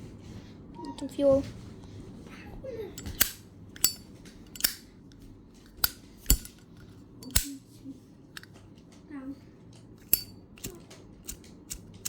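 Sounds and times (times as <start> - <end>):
lighter clicks: 3.0 - 4.8, 5.7 - 6.6, 7.2 - 7.6, 10.0 - 12.0
metal lighter lid snapping: 3.0 - 4.8, 5.7 - 6.6, 7.2 - 7.5, 10.0 - 11.8.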